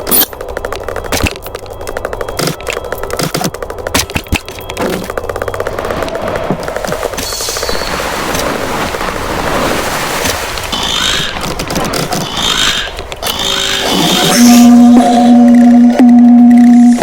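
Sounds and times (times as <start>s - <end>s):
sped up door rattling clatter: 0.0s - 7.2s
steady humming tone: 0.0s - 17.0s.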